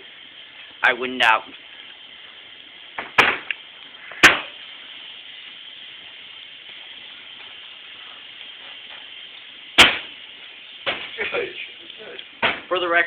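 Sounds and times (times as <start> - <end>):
steady hiss: 0.0 - 13.0
sharp knocks: 12.4 - 12.7.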